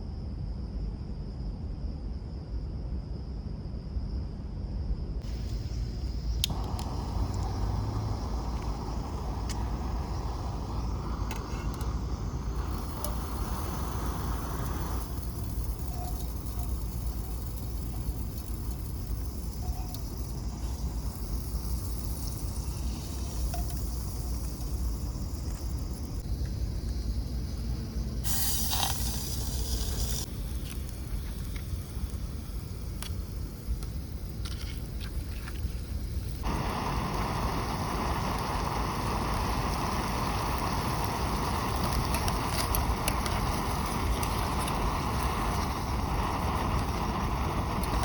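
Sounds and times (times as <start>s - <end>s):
low outdoor rumble: 0.6s - 48.0s
loud hiss: 5.2s - 48.0s
wind rumble on microphone: 29.6s - 48.0s.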